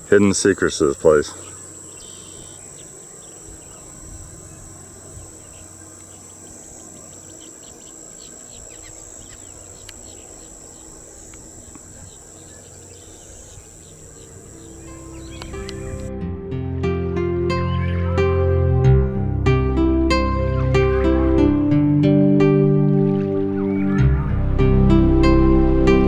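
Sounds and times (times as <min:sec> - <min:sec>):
insects droning: 0:00.0 - 0:26.0
bird chirps: 0:01.3 - 0:16.1
music: 0:14.4 - 0:26.0.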